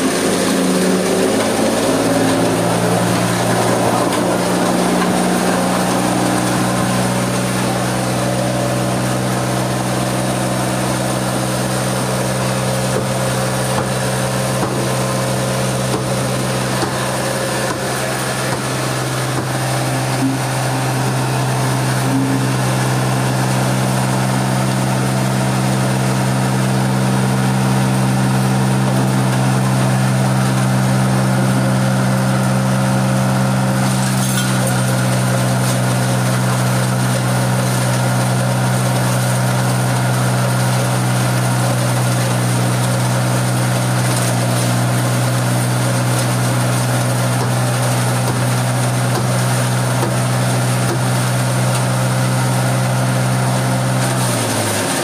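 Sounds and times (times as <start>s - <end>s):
stone crusher motor humming: 0.0s - 55.0s.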